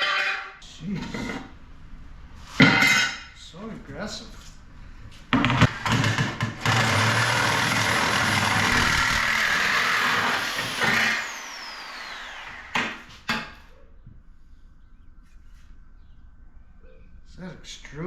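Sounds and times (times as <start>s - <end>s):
electric power tool whining: 5.7s - 13.2s.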